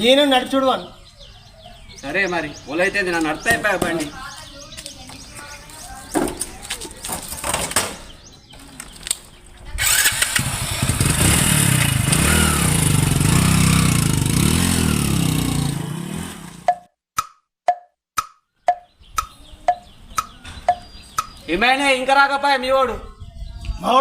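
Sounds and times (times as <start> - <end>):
motorcycle engine revving: 9.8 - 16.8
sharp taps: 16.7 - 21.4.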